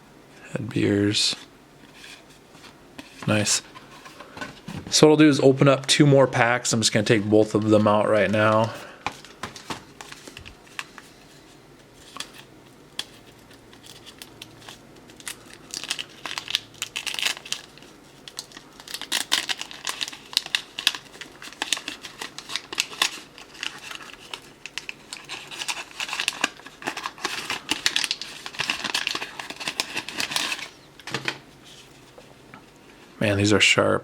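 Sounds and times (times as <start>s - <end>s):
paper wrappers crinkling and tearing: 6.8s - 32.4s.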